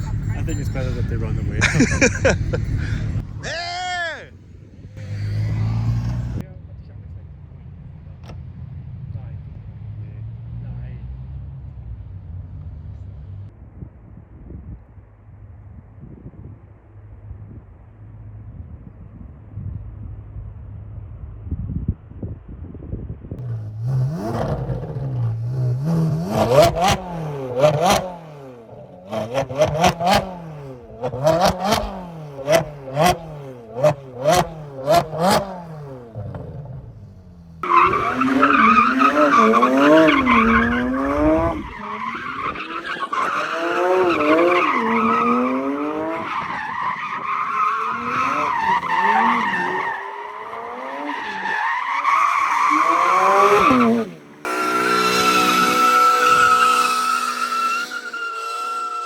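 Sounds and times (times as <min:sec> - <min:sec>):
sports car engine revving: 0:00.0 - 0:03.5, 0:04.6 - 0:06.4, 0:23.4 - 0:46.3
tyres squealing: 0:37.6 - 0:45.7, 0:47.1 - 0:59.0.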